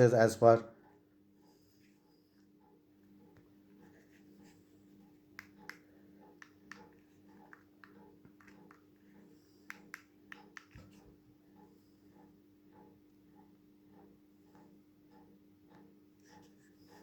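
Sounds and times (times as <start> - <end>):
remote control buttons clicking: 9.6 - 11.0.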